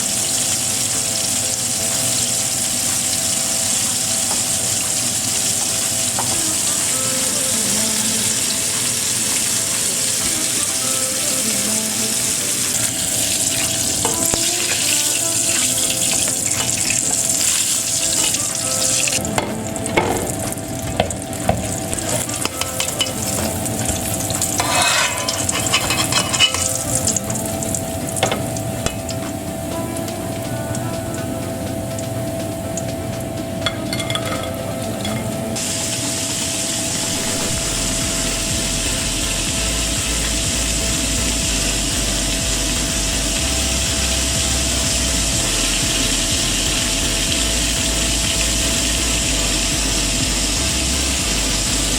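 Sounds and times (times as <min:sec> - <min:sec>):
food sizzling in oil: 0:00.0 - 0:51.9
utensils scraping a pan: 0:21.7 - 0:26.9.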